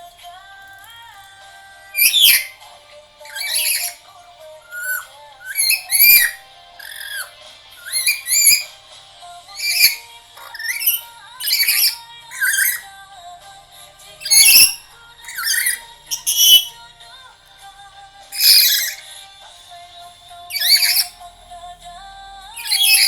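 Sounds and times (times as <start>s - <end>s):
background music: 0.0s - 23.0s
parrot squawks and whistled calls: 1.9s - 8.9s, 9.5s - 12.9s, 14.2s - 16.8s, 18.3s - 19.2s, 20.5s - 21.2s, 22.5s - 23.0s.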